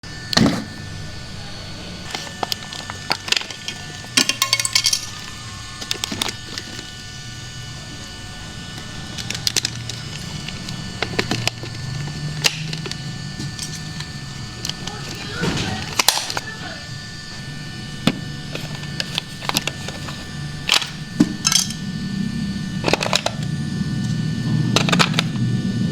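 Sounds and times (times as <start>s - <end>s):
model bulldozer motor hum: 0.0s - 25.9s
clicks and knocks: 2.1s - 6.9s
clattering rattle: 2.1s - 7.0s, 8.8s - 16.4s, 18.5s - 21.9s.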